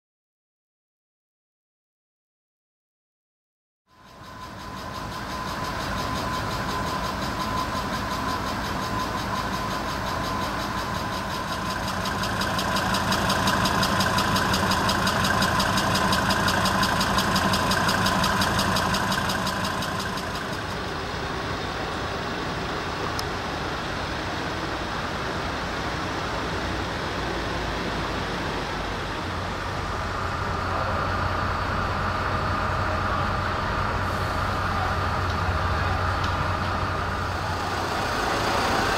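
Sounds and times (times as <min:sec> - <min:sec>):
steady whine: 0:03.9 - 0:25.1, 0:28.5 - 0:38.9
heavy vehicle engine running: 0:03.9 - 0:38.9.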